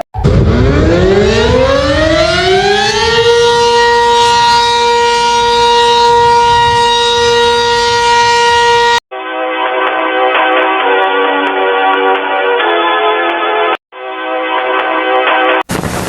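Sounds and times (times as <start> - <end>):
civil defense siren winding up: 0.2 - 9.0.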